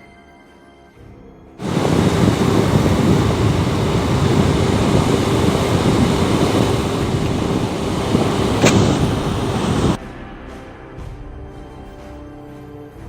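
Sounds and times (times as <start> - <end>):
snowstorm wind rushing: 1.6 - 10.0
sharp click: 8.6 - 9.9.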